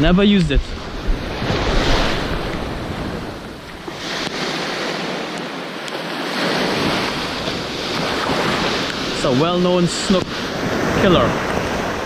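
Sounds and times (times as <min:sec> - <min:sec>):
ocean surf breaking: 0:00.0 - 0:12.0
wind buffeting microphone: 0:00.0 - 0:12.0.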